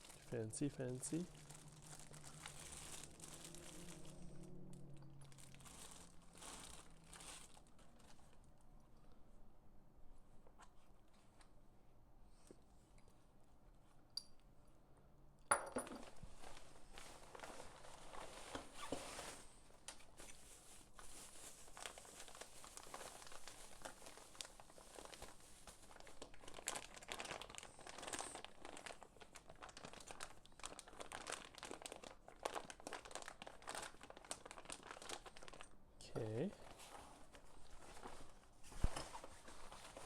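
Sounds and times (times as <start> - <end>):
packaging crinkling and rustling: 0.0 - 4.6, 5.2 - 8.5, 16.3 - 40.0.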